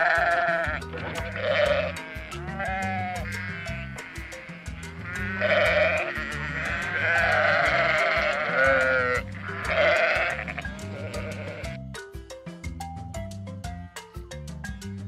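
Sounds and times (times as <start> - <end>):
animal bleating: 0.0 - 11.8
background music with steady beat: 0.0 - 15.0.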